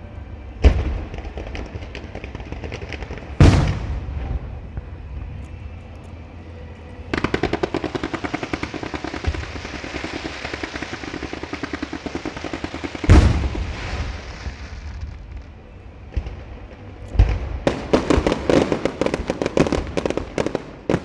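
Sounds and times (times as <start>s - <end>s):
firecrackers popping: 0.7s - 5.6s, 7.1s - 15.3s, 17.2s - 21.0s
loud firework boom: 3.4s - 4.9s, 13.1s - 14.2s.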